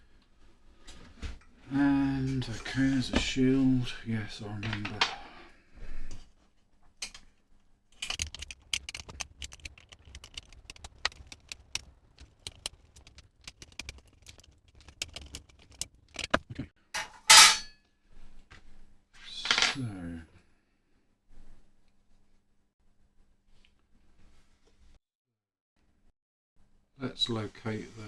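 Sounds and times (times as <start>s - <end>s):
small metallic clicks and rattles: 8.0s - 17.7s.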